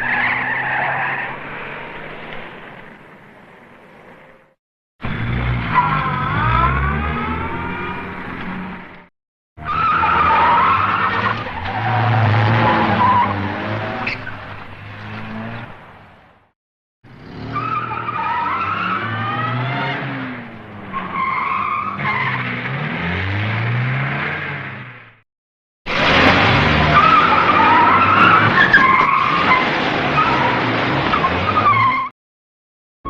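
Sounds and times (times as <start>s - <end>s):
car engine noise: 0.0s - 16.5s.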